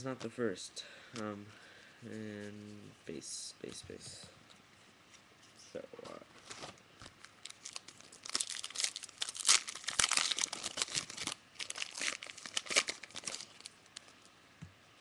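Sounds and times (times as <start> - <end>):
wrapper tearing and crinkling: 6.5 - 14.1.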